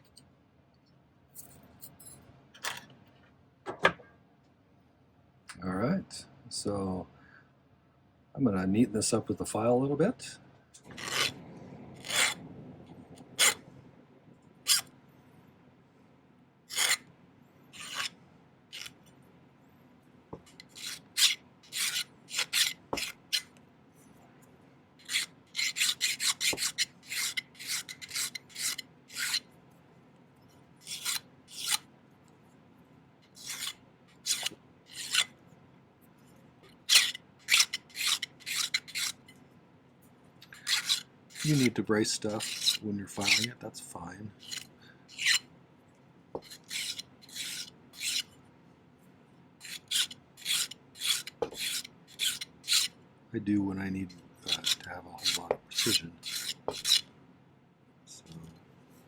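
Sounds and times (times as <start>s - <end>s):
hand file rasping on metal: 10.9s - 11.3s, 12.0s - 12.4s, 16.7s - 17.0s, 17.8s - 18.1s, 20.6s - 23.4s, 25.0s - 29.4s, 33.4s - 35.3s, 36.9s - 39.2s, 40.5s - 43.6s, 44.4s - 45.4s, 46.4s - 48.3s, 49.6s - 52.9s, 54.5s - 57.0s.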